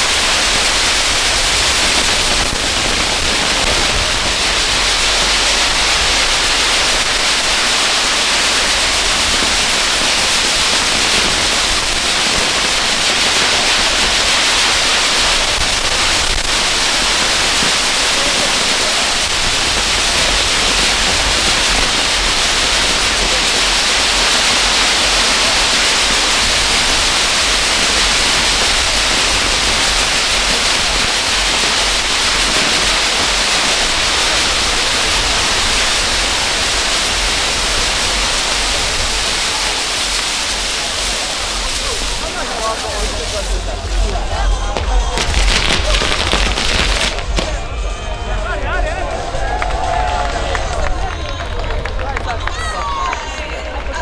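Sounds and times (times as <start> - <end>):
ground fireworks hissing: 0.0 - 54.0
low rumble: 42.8 - 52.1.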